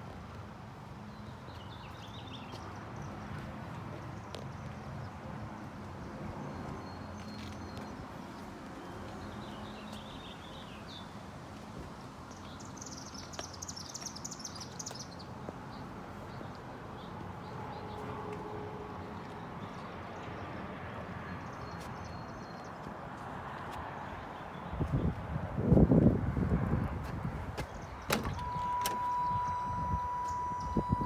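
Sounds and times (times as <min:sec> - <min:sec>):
birds chirping: 0:12.3 - 0:18.2.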